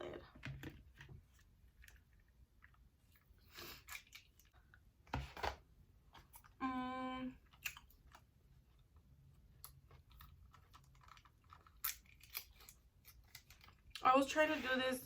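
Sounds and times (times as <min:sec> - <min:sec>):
packaging clicks and rustles: 0:09.7 - 0:13.9.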